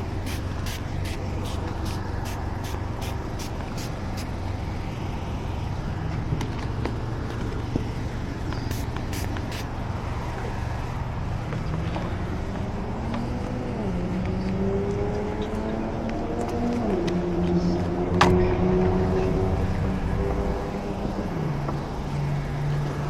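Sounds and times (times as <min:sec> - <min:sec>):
vehicle engine idling: 0:00.0 - 0:13.4.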